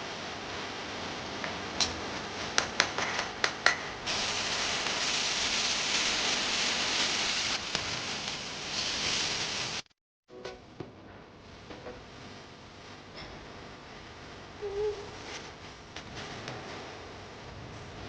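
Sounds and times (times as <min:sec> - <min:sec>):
food sizzling in hot oil: 0:04.0 - 0:09.9.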